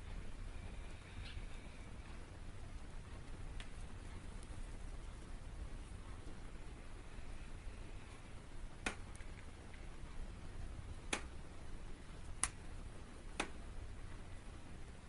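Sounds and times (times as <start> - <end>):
faint low hum: 0.0 - 15.0
sharp clicks: 8.8 - 9.8, 11.1 - 11.4, 12.3 - 12.6, 13.3 - 13.6.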